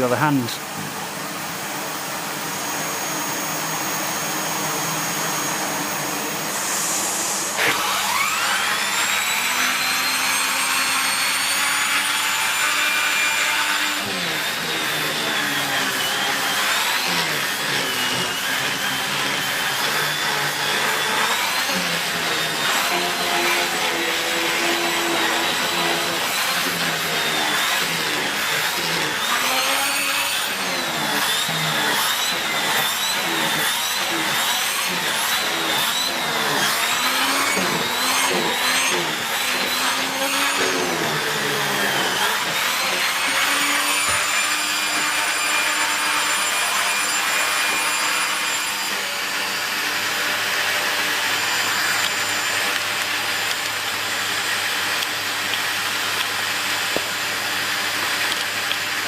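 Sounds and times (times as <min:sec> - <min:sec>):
vacuum cleaner running: 0:00.3 - 0:59.0.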